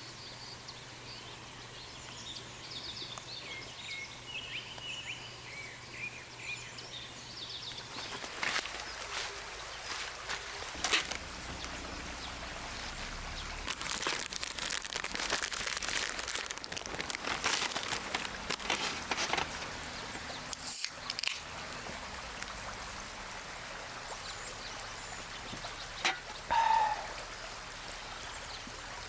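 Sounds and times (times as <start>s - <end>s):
creek rushing: 7.8s - 29.0s
irregular clicks and crackles: 10.7s - 13.0s, 13.6s - 19.7s, 20.5s - 21.8s.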